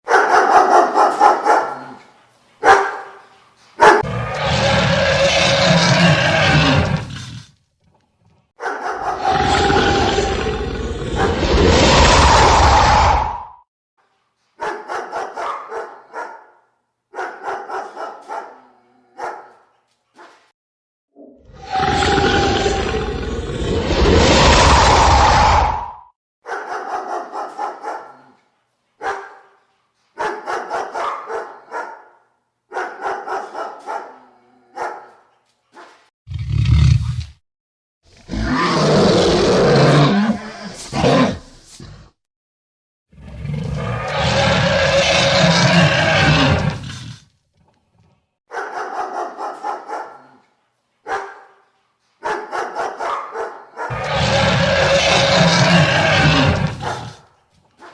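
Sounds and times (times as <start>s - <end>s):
deep loud creature call: 4.0s - 7.5s, 9.0s - 13.6s, 21.2s - 26.1s, 38.1s - 41.4s, 43.1s - 47.2s, 53.9s - 57.2s
monster roaring: 4.0s - 7.5s, 9.0s - 13.6s, 21.3s - 26.1s, 38.1s - 41.5s, 43.1s - 47.2s, 53.9s - 57.2s.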